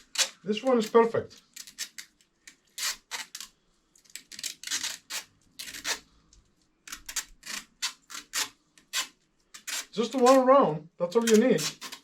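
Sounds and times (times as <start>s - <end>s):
tape ripping off roll: 0.0s - 3.5s, 4.1s - 6.1s, 11.2s - 12.0s.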